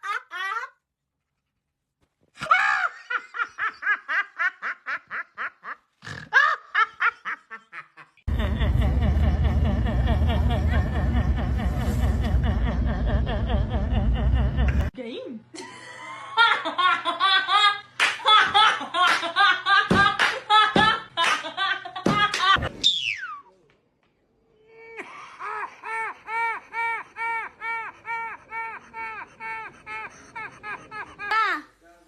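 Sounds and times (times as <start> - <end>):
person laughing: 2.4 - 14.9, 24.8 - 31.6
heavy low rumble: 8.3 - 14.9.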